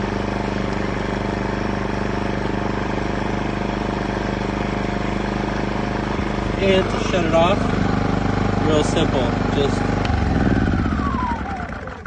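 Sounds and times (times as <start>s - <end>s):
generator engine humming: 0.0s - 12.0s.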